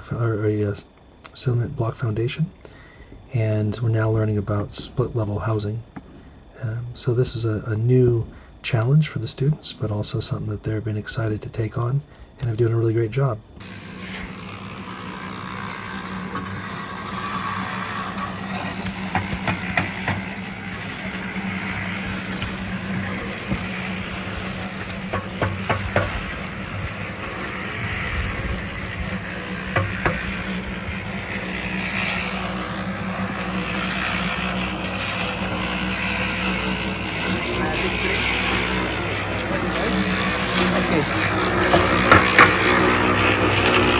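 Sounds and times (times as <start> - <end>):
construction knocks: 13.6 - 33.8
motor humming: 13.6 - 43.9.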